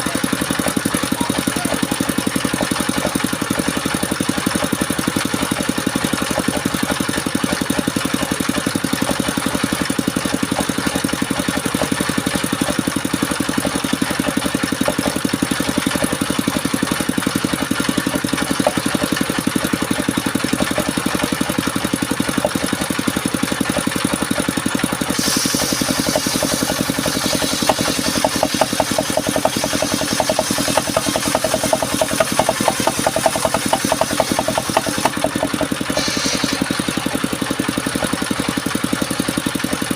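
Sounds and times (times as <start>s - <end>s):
saw engine chugging: 0.0s - 39.9s
saw blade hissing through wood: 24.6s - 39.0s.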